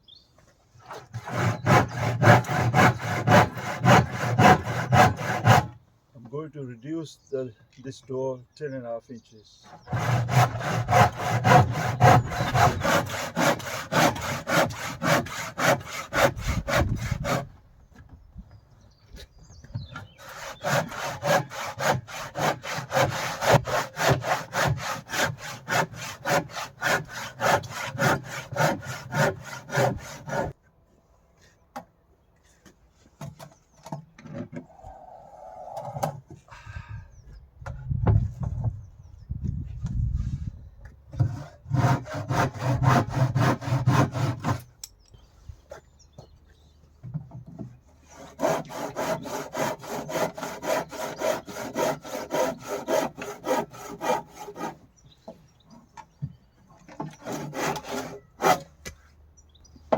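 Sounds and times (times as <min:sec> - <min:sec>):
handsaw cutting wood: 0:00.9 - 0:05.8, 0:09.7 - 0:17.5, 0:20.0 - 0:30.6, 0:41.2 - 0:44.7, 0:48.0 - 0:54.8, 0:57.0 - 0:58.7.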